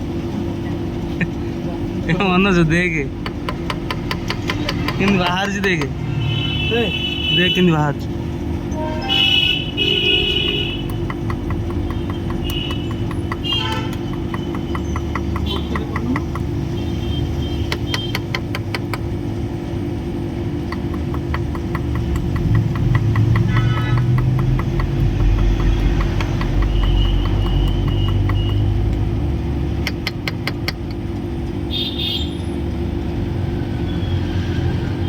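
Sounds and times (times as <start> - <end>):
rapid clicks: 10.5 - 16.8, 20.6 - 29.1.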